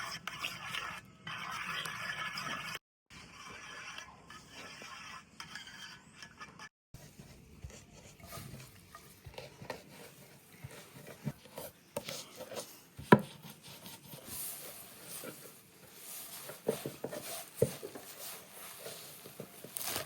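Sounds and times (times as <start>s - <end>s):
light taps and scraping: 5.4s - 20.0s.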